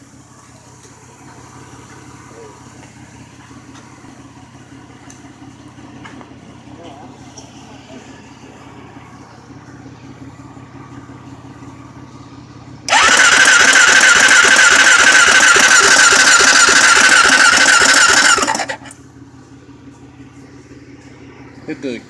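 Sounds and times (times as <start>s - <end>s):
electric starter cranking engine: 12.9s - 19.0s.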